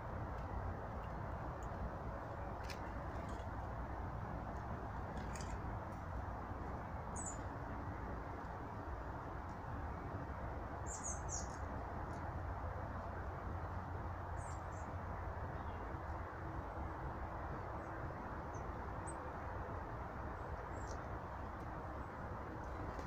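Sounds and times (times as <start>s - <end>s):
steady rushing background noise: 0.0s - 23.0s
small birds chirping high: 10.8s - 11.6s.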